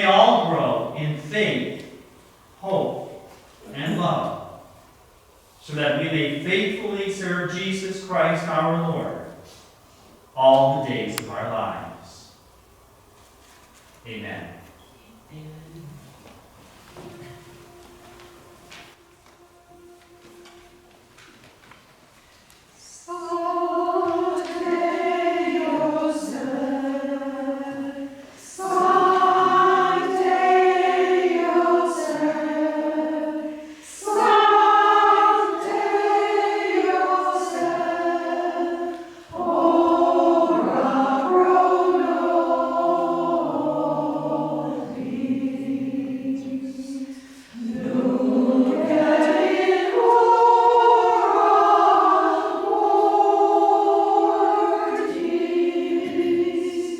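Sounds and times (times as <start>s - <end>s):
choir singing a hymn: 16.6s - 21.4s, 22.8s - 56.9s.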